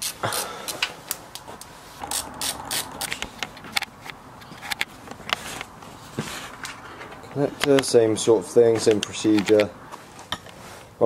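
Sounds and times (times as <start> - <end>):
plastic parts clicking and rattling: 3.0 - 5.7, 8.8 - 9.7.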